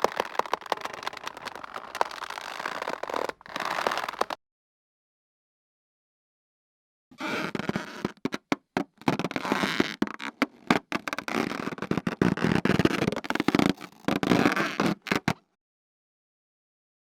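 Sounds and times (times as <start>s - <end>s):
stuttering squeaks and creaks: 0.0s - 4.4s, 7.2s - 15.4s.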